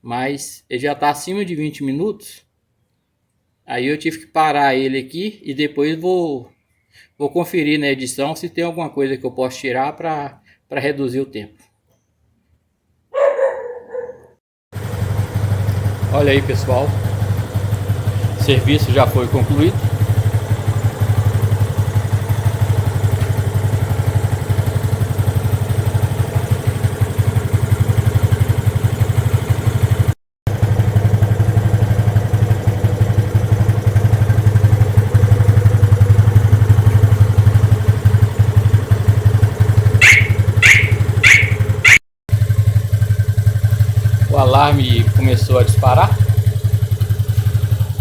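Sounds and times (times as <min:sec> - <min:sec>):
motorcycle engine idling: 0:14.8 - 0:48.0
short high alarm beeps: 0:40.0 - 0:42.0.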